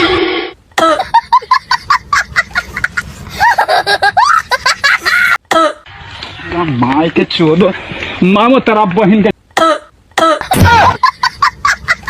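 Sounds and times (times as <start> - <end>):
high-pitched cackling laughter: 0.8 - 5.8, 10.4 - 12.0.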